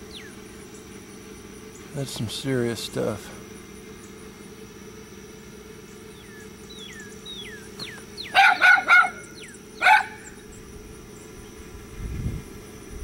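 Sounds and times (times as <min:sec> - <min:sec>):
steady low hum: 0:00.0 - 0:13.0
dogs barking: 0:08.2 - 0:10.4.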